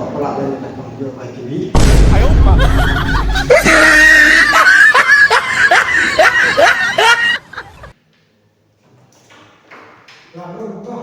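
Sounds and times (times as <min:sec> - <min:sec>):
loud laughter in rhythmic bursts: 0:02.5 - 0:07.9.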